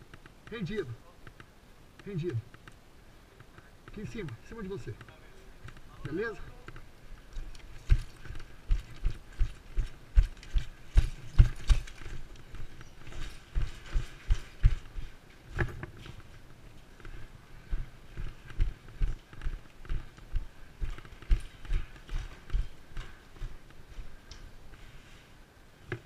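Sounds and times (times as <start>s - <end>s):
footsteps low thuds: 7.4s - 24.9s.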